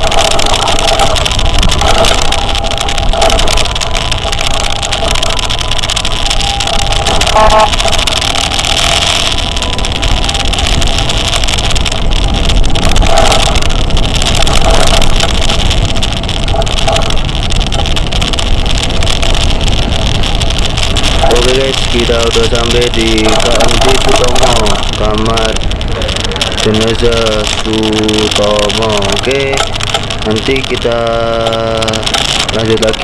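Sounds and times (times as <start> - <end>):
scooter road noise: 0.0 - 33.0
wind noise: 0.0 - 33.0
horn toots: 0.8 - 10.8.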